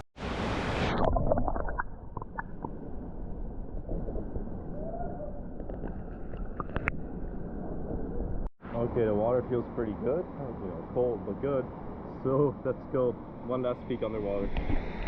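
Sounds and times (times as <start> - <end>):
underwater rumble of moving water: 0.2 - 15.0
small clicks and bubble ticks: 1.0 - 2.7.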